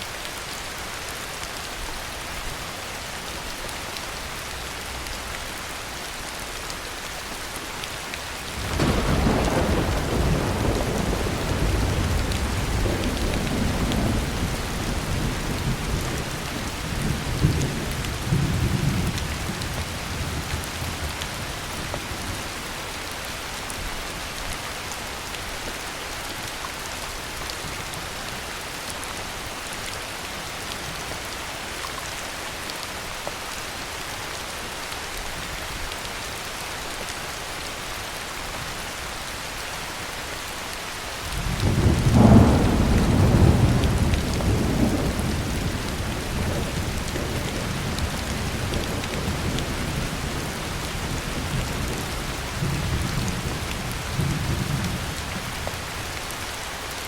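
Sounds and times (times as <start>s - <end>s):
heavy rain falling: 0.0s - 57.0s
rumble of thunder: 8.6s - 22.5s, 41.4s - 55.6s.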